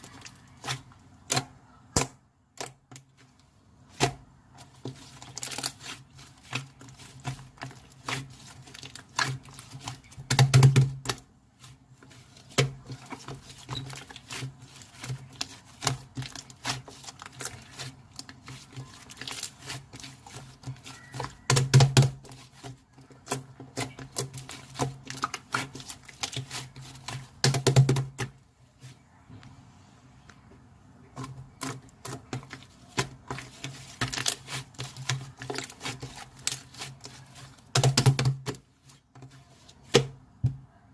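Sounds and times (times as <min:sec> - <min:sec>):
slime squishing: 0:00.0 - 0:29.2, 0:31.0 - 0:40.9.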